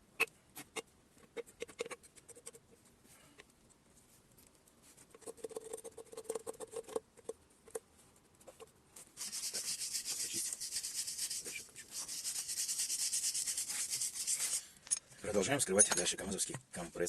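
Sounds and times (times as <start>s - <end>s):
light metallic clinks: 15.7s - 16.2s.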